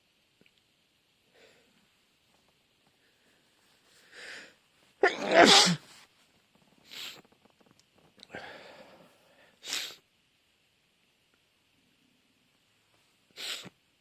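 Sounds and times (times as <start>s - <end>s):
person sneezing: 5.0s - 5.9s, 13.4s - 13.8s.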